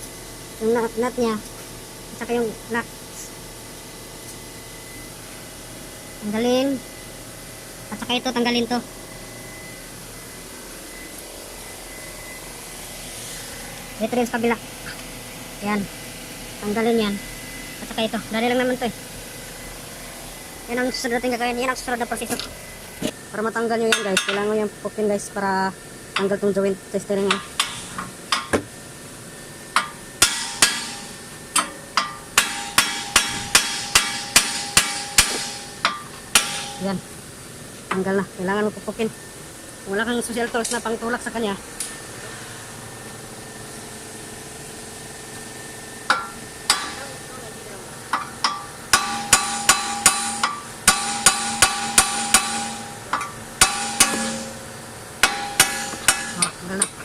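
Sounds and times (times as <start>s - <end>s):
hammer striking steel: 27.3s - 28.6s, 29.8s - 37.0s, 46.1s - 47.2s, 48.1s - 57.0s.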